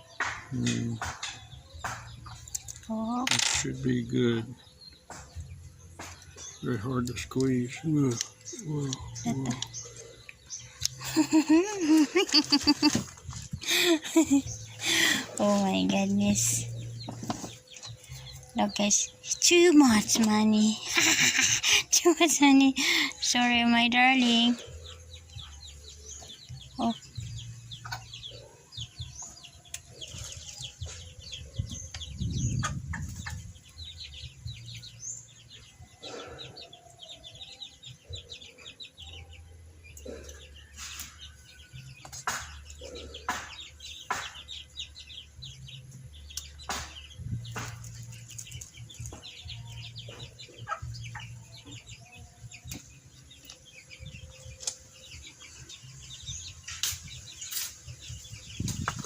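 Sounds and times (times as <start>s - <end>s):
chickens clucking: 0.0s - 19.2s, 24.2s - 59.0s
birds chirping: 0.0s - 59.0s
sharp knocks and clatter: 0.2s - 2.4s.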